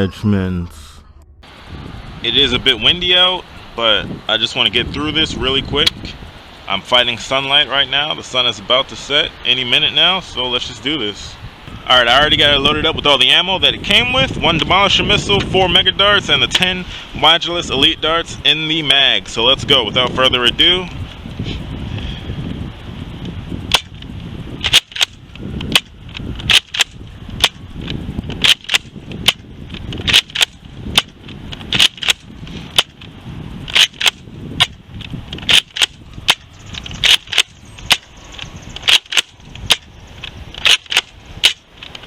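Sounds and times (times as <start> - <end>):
toy blaster plastic clacks: 24.6 - 25.9, 26.5 - 27.6, 30.0 - 33.0, 33.7 - 42.0.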